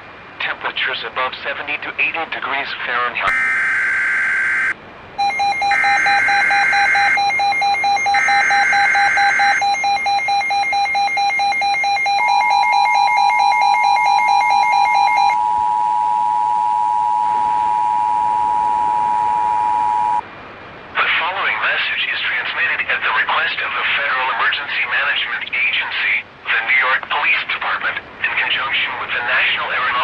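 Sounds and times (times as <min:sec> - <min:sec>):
rapid electronic beeping: 0:03.3 - 0:15.8
screeching data bursts: 0:03.3 - 0:16.1
steady attention tone: 0:03.3 - 0:20.2.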